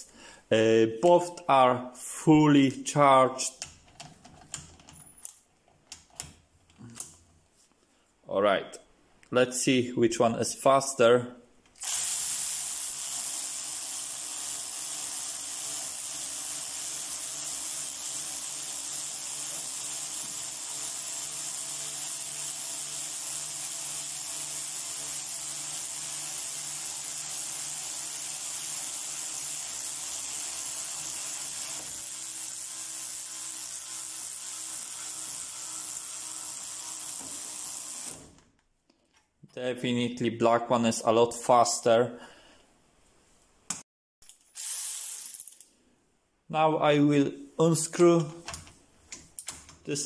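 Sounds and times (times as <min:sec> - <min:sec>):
battery ratchets whirring: 0:11.8 - 0:38.3, 0:44.3 - 0:45.7.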